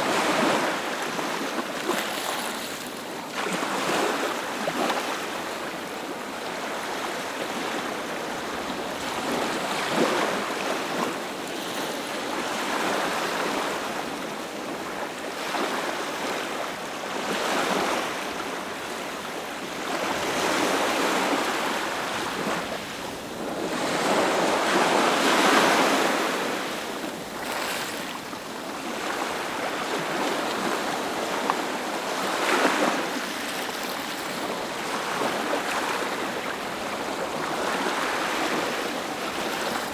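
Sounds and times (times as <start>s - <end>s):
ocean waves breaking: 17.2s - 39.9s.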